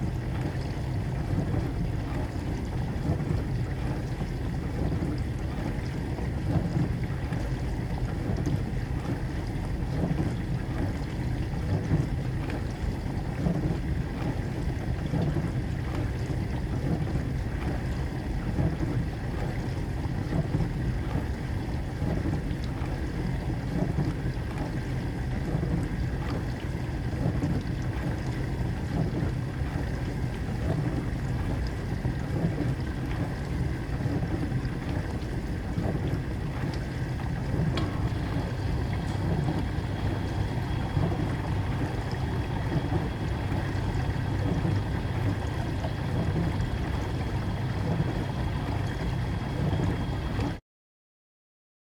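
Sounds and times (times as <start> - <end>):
appliance running with low rumble: 0.0 - 50.6.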